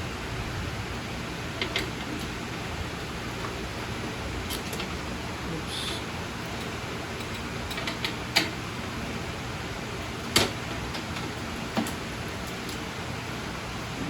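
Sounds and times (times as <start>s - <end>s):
steady hiss: 2.2s - 7.0s.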